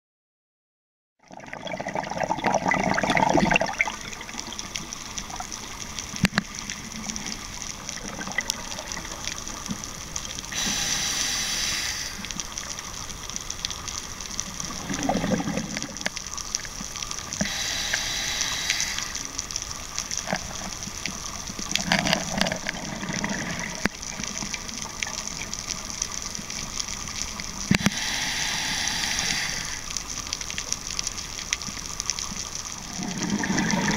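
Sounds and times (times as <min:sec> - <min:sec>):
exhaled bubbles gurgling: 0:01.2 - 0:31.4, 0:32.7 - 0:33.9
regulator hissing inhalations: 0:10.5 - 0:12.4, 0:17.4 - 0:19.4, 0:27.7 - 0:30.0.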